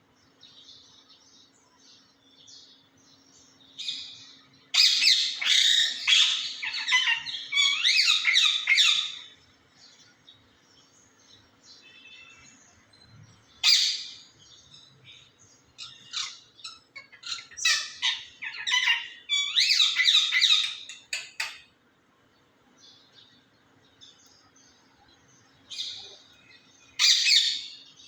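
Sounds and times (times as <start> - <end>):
parrot calling loudly: 4.7 - 9.3, 15.8 - 20.9, 27.0 - 27.8
parrot chatter: 4.8 - 9.3, 15.8 - 21.7.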